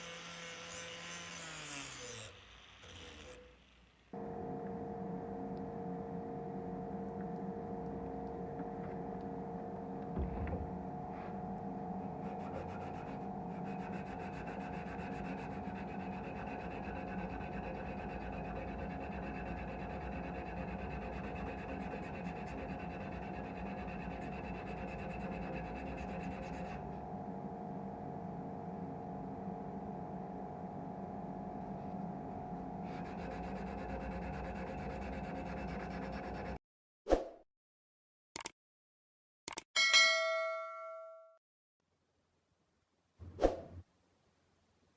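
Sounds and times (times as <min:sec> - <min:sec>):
electric sander running: 0:00.0 - 0:03.8
sander scraping steel blade: 0:00.0 - 0:03.8, 0:32.8 - 0:36.6.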